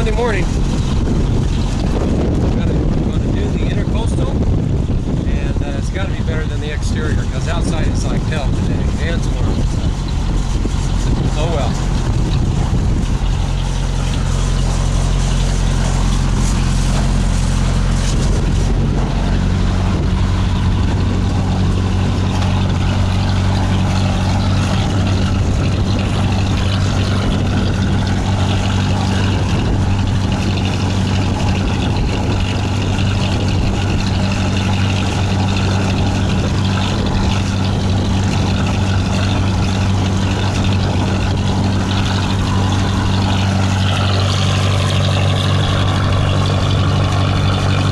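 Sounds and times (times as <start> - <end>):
diesel engine humming: 0.0 - 47.9.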